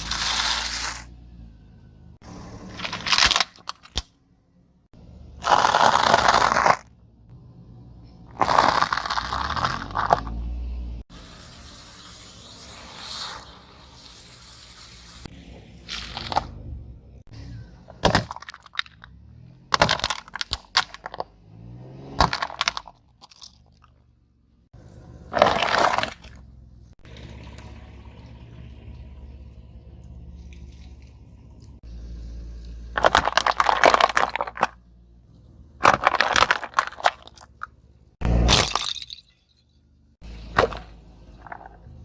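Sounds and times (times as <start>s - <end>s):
objects crunching under heavy weight: 2.7s - 4.1s, 5.4s - 6.9s, 8.3s - 10.4s, 25.3s - 26.4s, 33.0s - 34.8s, 35.8s - 39.1s
low steady rumble: 23.7s - 38.5s.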